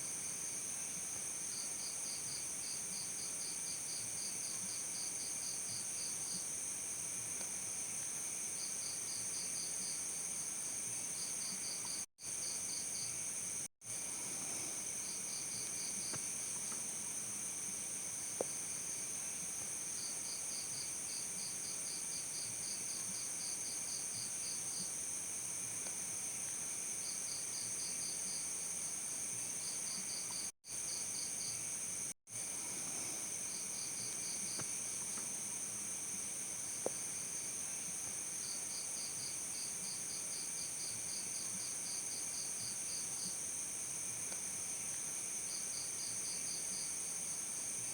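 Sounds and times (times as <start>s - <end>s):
cricket chirps: 0.0s - 47.9s.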